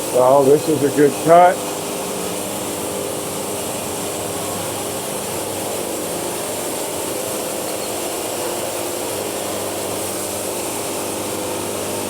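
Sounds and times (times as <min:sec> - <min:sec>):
band saw blade cutting wood: 0:00.0 - 0:04.2
engine humming: 0:00.0 - 0:12.0.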